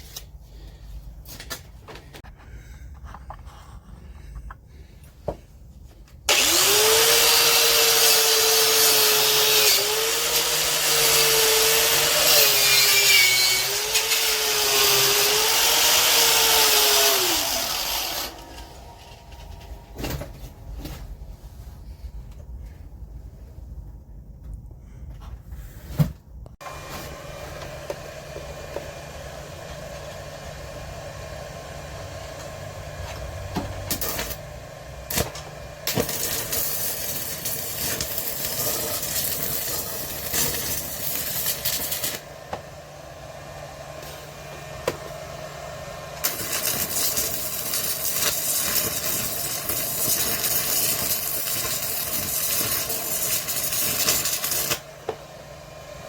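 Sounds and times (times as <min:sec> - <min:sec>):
welding arc crackling and sizzling: 0:06.3 - 0:19.1, 0:32.4 - 0:42.3, 0:46.2 - 0:54.9.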